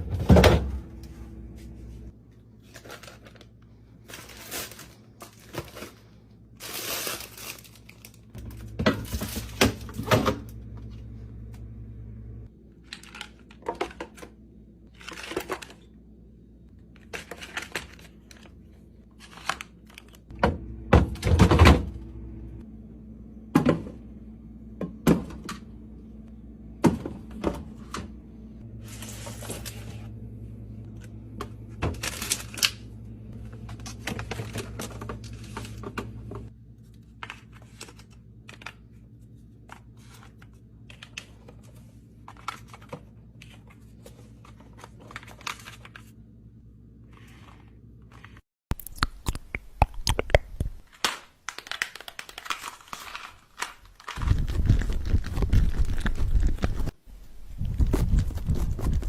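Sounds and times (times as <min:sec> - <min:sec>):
packaging rustling: 0:02.6 - 0:10.0, 0:50.8 - 0:57.0.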